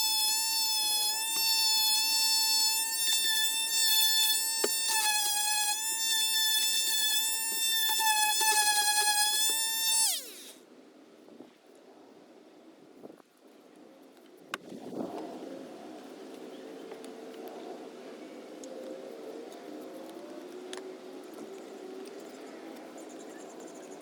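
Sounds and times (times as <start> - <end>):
power tool motor whining: 0.0 - 10.6.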